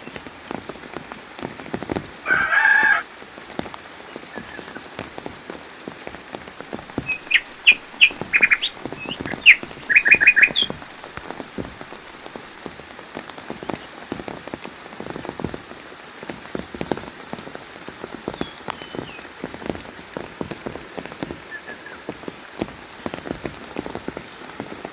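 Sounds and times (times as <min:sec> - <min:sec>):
rain pattering and dripping: 0:00.0 - 0:24.9
bird chirping: 0:06.7 - 0:12.6.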